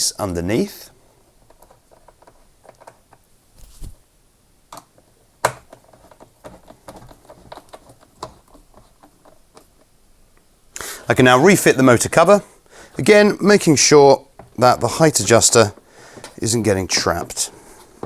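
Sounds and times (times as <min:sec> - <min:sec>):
dull thump: 0:03.6 - 0:04.0.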